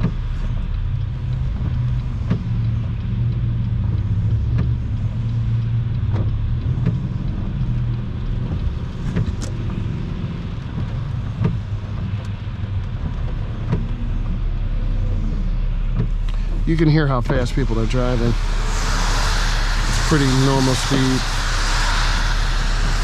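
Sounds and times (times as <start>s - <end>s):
car engine and tyre rumble: 0.0s - 23.0s
passing traffic hiss: 13.7s - 23.0s.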